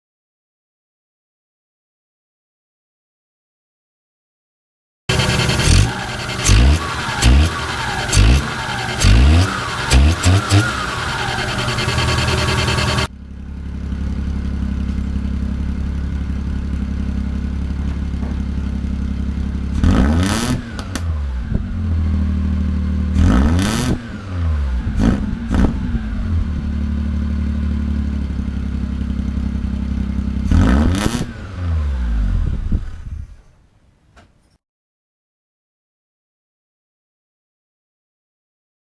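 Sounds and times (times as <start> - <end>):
car exhaust idling and revving: 5.1 - 32.8.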